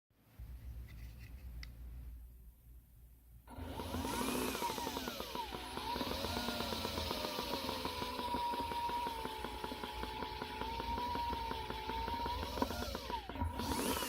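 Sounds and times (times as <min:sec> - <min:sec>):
electric motor whine: 0:03.5 - 0:14.0
fast buzzing rattle: 0:03.8 - 0:14.0.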